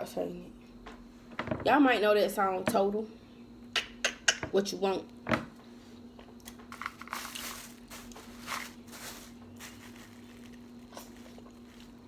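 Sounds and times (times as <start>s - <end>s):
steady low hum: 2.0s - 12.0s
shells crackling and rustling: 6.4s - 12.0s.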